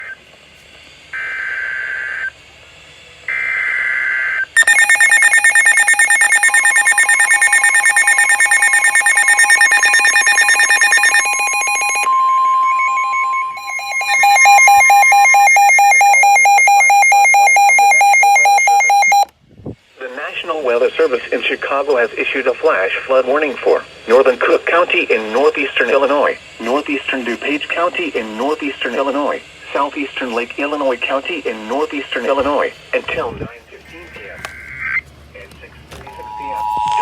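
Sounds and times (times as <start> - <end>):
steady warning tone: 1.0 - 19.3, 20.0 - 35.0, 36.0 - 37.0
rapidly pulsing electronic beeps: 4.6 - 19.3.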